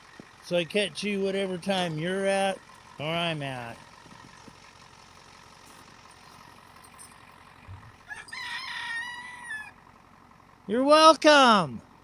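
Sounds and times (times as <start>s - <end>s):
rooster crowing: 8.0s - 9.8s.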